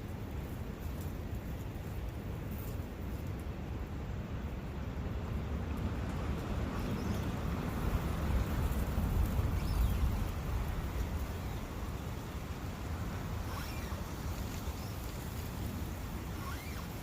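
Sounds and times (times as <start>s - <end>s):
faint bird chirps: 13.5s - 14.1s, 16.3s - 17.0s.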